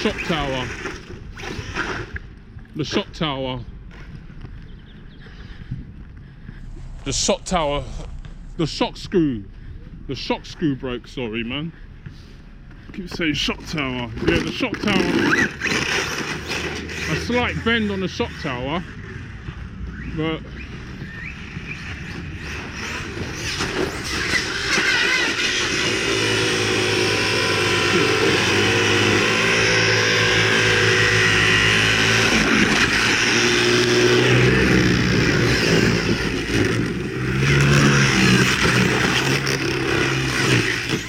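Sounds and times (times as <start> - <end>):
tyre noise: 0.0 - 41.0
electric motor whining: 14.2 - 41.0.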